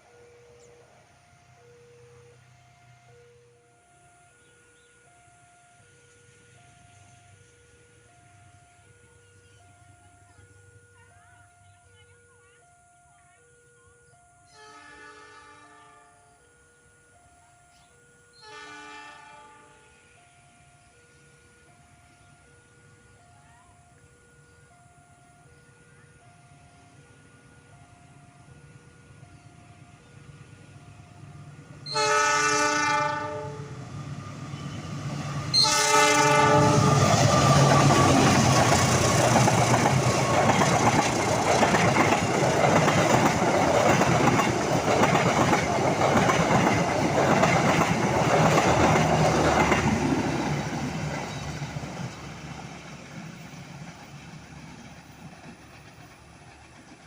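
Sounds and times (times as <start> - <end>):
train passing close by: 0.0 - 57.0
train horn blasts: 14.4 - 16.5, 17.7 - 20.1, 31.8 - 39.0.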